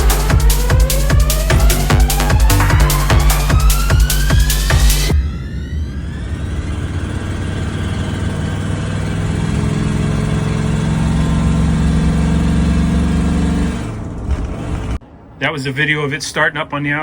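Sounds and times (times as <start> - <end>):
electronic music: 0.0 - 7.3
engine idling: 0.0 - 13.2.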